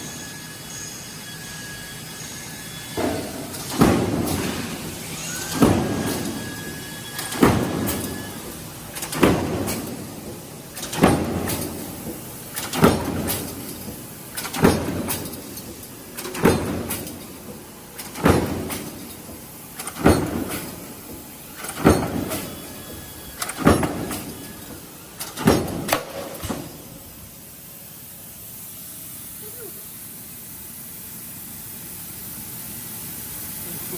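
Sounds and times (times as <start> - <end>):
punch press striking metal: 3.0 - 26.9.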